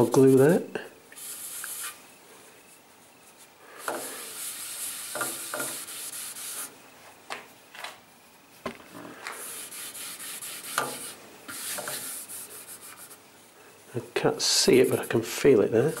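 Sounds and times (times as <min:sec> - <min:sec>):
cloth scrubbing paintwork: 0:01.2 - 0:02.0, 0:02.8 - 0:06.7, 0:09.4 - 0:13.5, 0:14.2 - 0:16.0.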